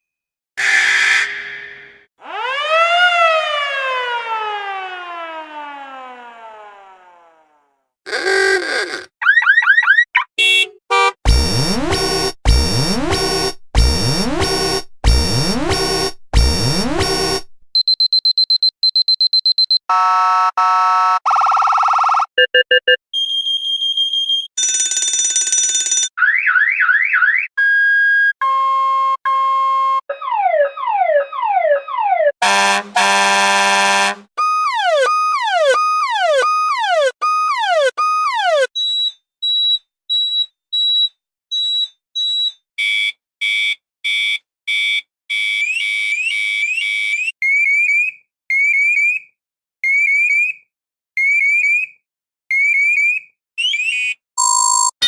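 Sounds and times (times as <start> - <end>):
harsh buzzer tones: 0.6 - 1.9, 8.1 - 9.1, 10.4 - 17.4, 32.4 - 34.3
pulsed electronic beeps: 54.0 - 54.9.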